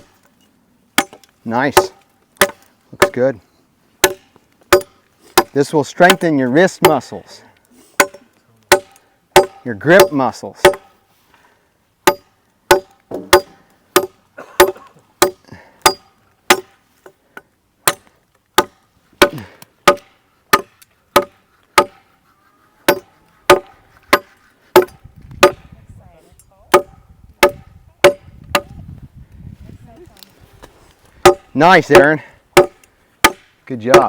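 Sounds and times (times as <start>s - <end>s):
machete chopping wood: 1.0s - 3.2s, 4.0s - 7.0s, 8.0s - 10.9s, 12.0s - 16.7s, 17.8s - 22.0s, 22.9s - 25.7s, 26.7s - 28.8s, 31.2s - 34.0s.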